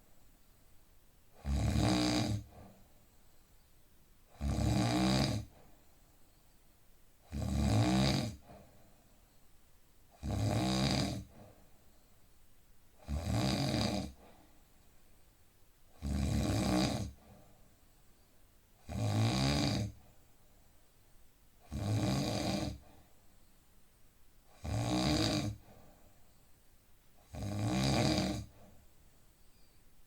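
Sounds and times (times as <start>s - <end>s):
man snoring: 1.4s - 2.6s, 4.3s - 5.6s, 7.3s - 8.6s, 10.2s - 11.4s, 13.0s - 14.2s, 16.0s - 17.2s, 18.8s - 20.0s, 21.6s - 22.9s, 24.5s - 25.7s, 27.3s - 28.6s.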